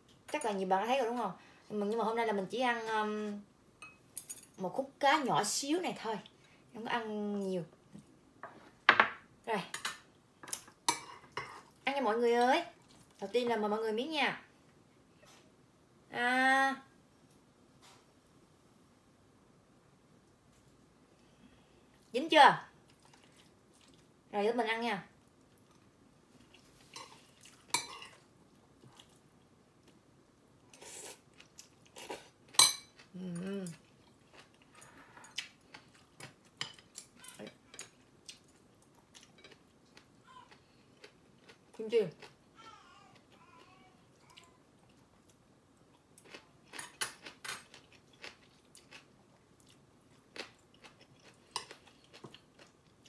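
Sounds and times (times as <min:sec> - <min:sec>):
spoon clinking against bowl: 0:03.8 - 0:04.0
quiet chewing: 0:22.8 - 0:24.2, 0:25.2 - 0:42.4, 0:43.1 - 0:53.0.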